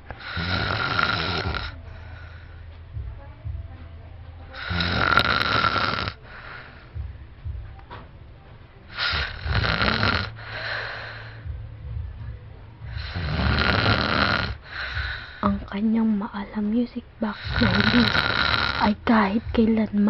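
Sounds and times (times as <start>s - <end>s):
man snoring loudly: 0.2s - 2.4s, 4.6s - 6.8s, 8.9s - 11.5s, 12.9s - 15.4s, 17.4s - 19.0s.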